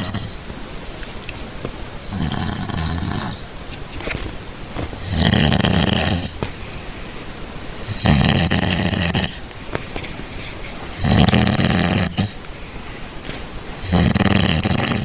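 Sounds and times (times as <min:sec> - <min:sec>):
woman snoring with bubbling rattle: 0:00.0 - 0:00.4, 0:02.0 - 0:03.5, 0:05.0 - 0:06.4, 0:07.8 - 0:09.4, 0:11.0 - 0:12.4, 0:13.8 - 0:15.0.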